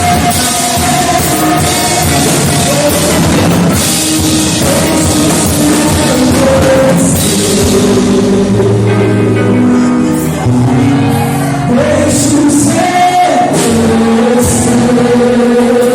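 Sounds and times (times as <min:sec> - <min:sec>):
loud rock band music: 0:00.0 - 0:15.9.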